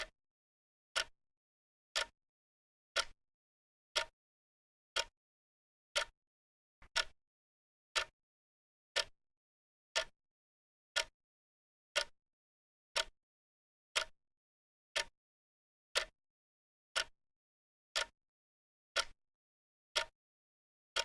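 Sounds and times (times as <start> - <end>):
clock ticking: 3.0 - 3.2, 6.8 - 7.2, 18.0 - 18.2, 19.0 - 19.2.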